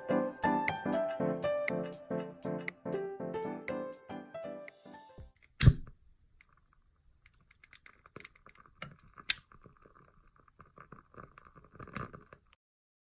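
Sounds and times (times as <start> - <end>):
sharp thump: 5.6 - 5.9.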